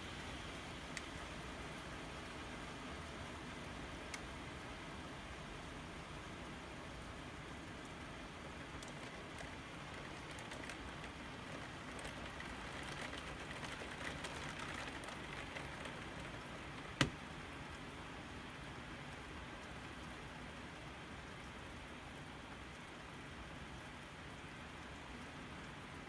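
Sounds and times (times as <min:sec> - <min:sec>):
rain hiss: 0:00.0 - 0:26.0
raindrops ticking: 0:07.4 - 0:17.8.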